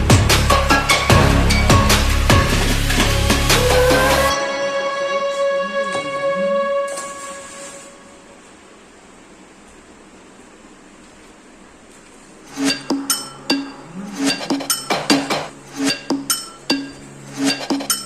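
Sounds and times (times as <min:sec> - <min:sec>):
faint hiss: 0:02.1 - 0:14.5.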